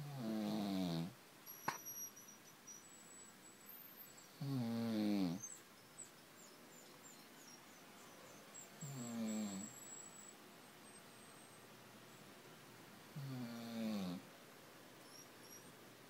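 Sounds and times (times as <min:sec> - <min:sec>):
cat snoring: 0:00.0 - 0:01.1, 0:04.4 - 0:05.5, 0:08.8 - 0:09.7, 0:13.1 - 0:14.3.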